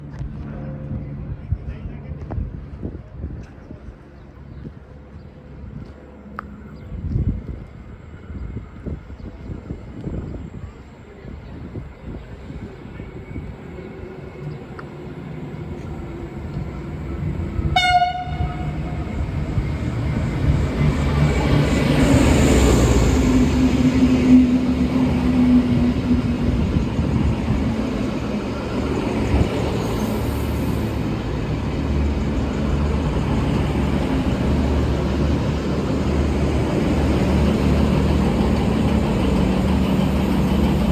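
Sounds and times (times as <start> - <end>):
diesel train engines: 0.0 - 40.9
train horn blast: 17.6 - 19.2.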